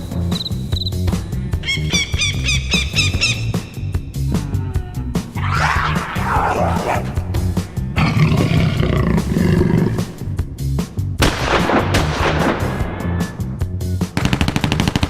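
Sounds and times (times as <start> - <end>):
person making rasping vocal bursts: 5.3 - 10.2.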